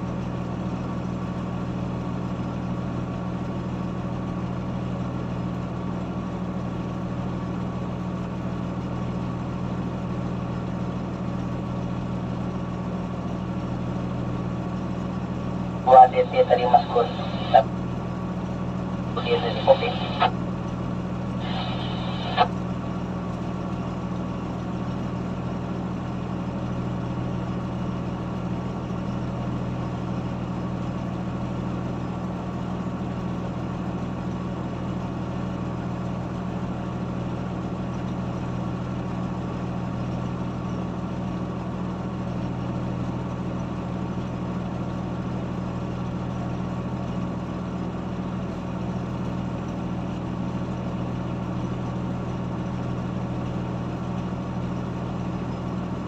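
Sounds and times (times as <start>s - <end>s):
heavy diesel engine running: 10.9s - 28.7s.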